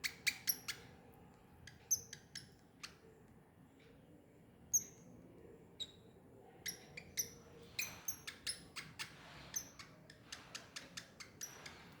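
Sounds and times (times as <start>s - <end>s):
baby squirrel squeaking: 0.0s - 0.8s.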